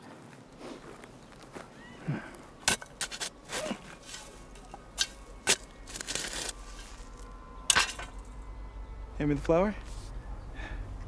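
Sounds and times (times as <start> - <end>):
digging in soil: 1.9 - 8.4
sharp scrapes and knocks: 2.6 - 8.4.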